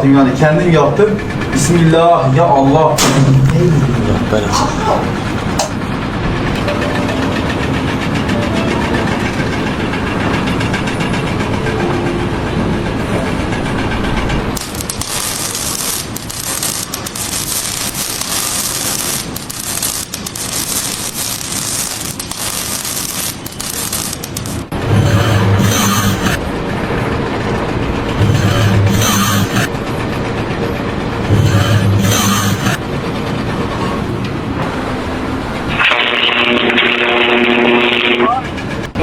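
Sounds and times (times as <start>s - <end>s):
engine running: 0.0s - 39.0s
harsh hiss with crackles: 14.6s - 24.7s.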